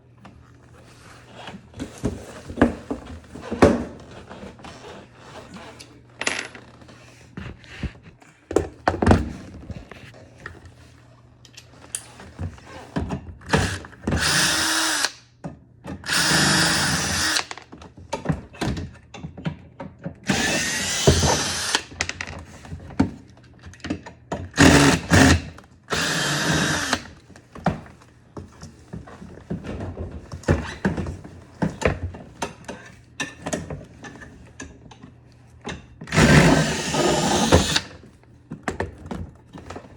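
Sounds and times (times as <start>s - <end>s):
cordless drill running: 13.6s - 15.2s, 16.0s - 17.6s, 20.3s - 21.9s, 24.6s - 27.2s, 36.1s - 37.9s.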